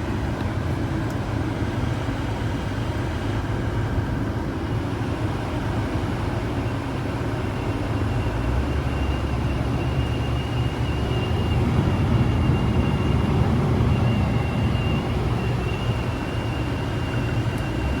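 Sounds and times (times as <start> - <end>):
car engine running: 10.4 - 18.0.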